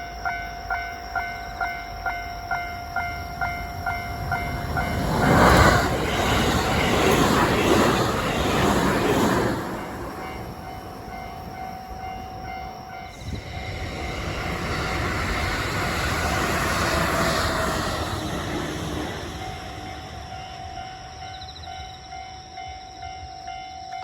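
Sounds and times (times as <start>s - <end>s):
train passing: 0.0s - 24.0s
level crossing alarm ringing: 9.9s - 13.8s.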